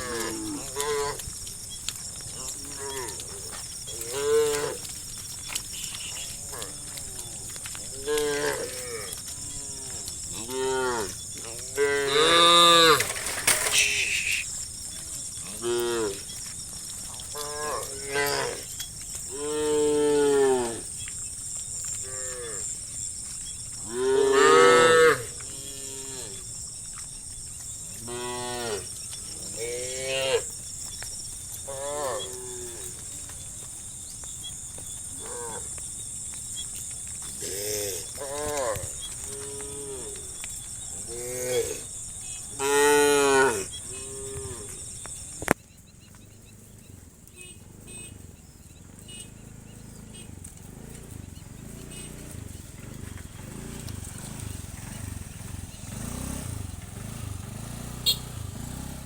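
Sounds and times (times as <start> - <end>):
cows mooing: 0.0 - 1.4, 2.2 - 14.5, 15.4 - 16.4, 17.2 - 20.9, 21.9 - 22.8, 23.8 - 26.4, 28.0 - 30.6, 31.6 - 33.4, 35.1 - 35.8, 37.3 - 44.8.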